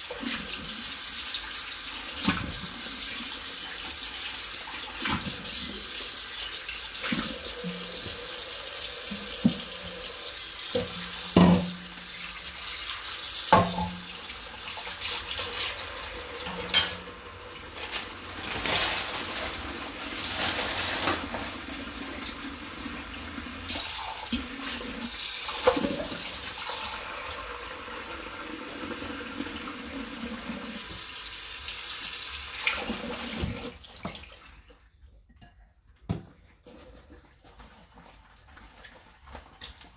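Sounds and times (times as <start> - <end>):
tap water running into sink: 0.0 - 34.6
dishes clinking: 10.8 - 11.9, 13.6 - 14.1, 15.5 - 17.2.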